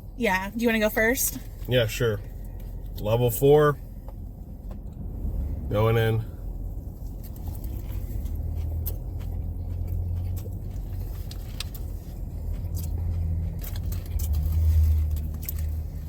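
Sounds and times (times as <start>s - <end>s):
low rumble: 0.0s - 16.0s
chewing crispy food: 6.9s - 16.0s.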